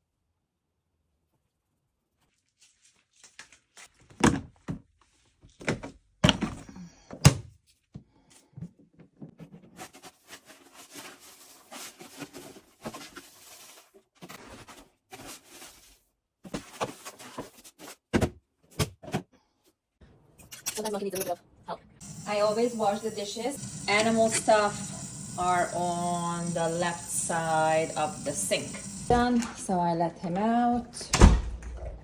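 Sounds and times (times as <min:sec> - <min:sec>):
knocks and thunks: 0:31.1 - 0:32.0.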